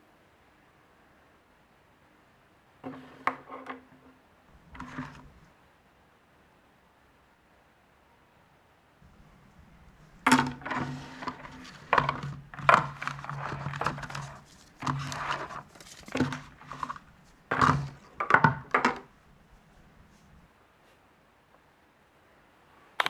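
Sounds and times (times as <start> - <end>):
packaging knocks and taps: 4.6 - 5.5, 9.1 - 20.5
packaging crinkling rustles: 9.1 - 20.5.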